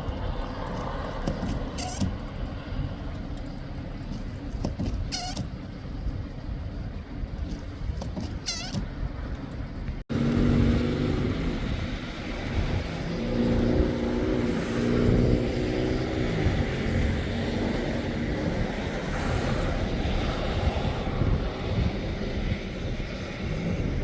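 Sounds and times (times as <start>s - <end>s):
car engine running: 0.0s - 18.6s
low rumble: 8.8s - 24.0s.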